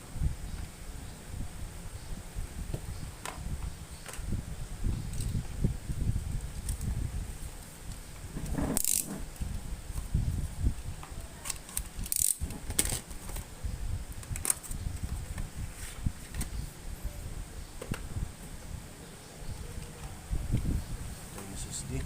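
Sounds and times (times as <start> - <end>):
tools and parts clicking and rattling: 8.4 - 9.2, 11.4 - 13.4.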